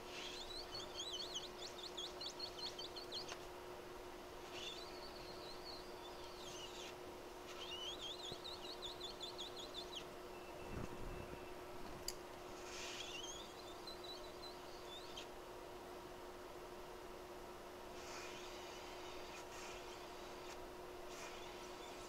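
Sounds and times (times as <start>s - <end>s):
small bird twittering: 0.0s - 3.4s, 4.4s - 11.6s, 12.6s - 15.3s
steady low hum: 0.0s - 22.0s.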